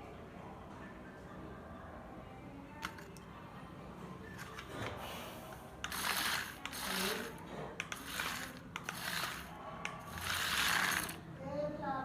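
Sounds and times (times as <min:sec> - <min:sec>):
small electric motors whirring: 0:05.8 - 0:11.2.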